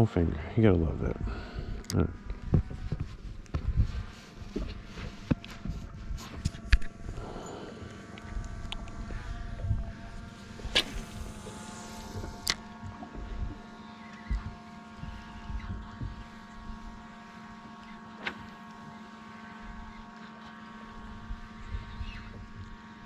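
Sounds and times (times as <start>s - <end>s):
boat motor humming: 0.0s - 23.0s
wind on microphone: 0.9s - 7.6s, 8.2s - 17.8s, 20.9s - 23.0s.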